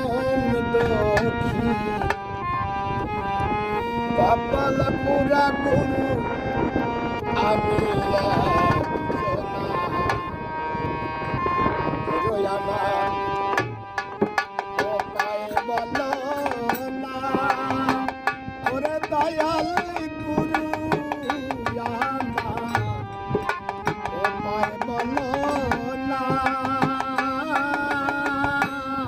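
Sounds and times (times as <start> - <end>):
tabla drumming: 0.0 - 2.3, 7.4 - 10.5, 12.8 - 29.0.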